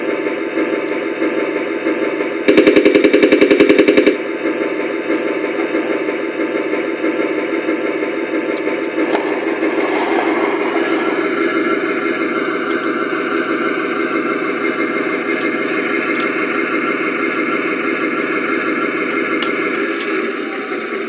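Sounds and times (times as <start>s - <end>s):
toy engine running sound: 4.5s - 21.0s.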